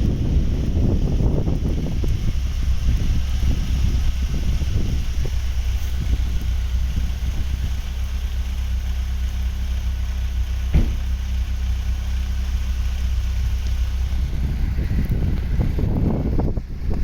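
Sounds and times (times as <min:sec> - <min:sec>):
car engine idling: 0:00.0 - 0:17.0
short knock: 0:10.7 - 0:11.0.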